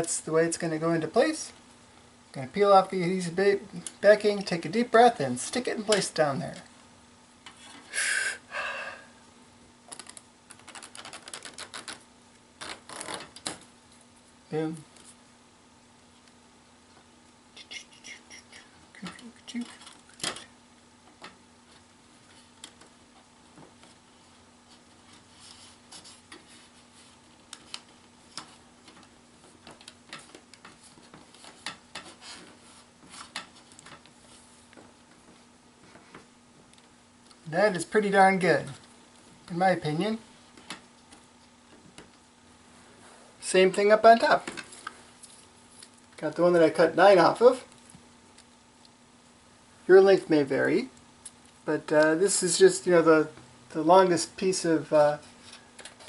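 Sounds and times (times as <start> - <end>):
faint steady hum: 0.0 - 56.0
deep breath: 7.9 - 9.2
adhesive backing peeling crackle: 9.9 - 12.0, 12.6 - 13.5.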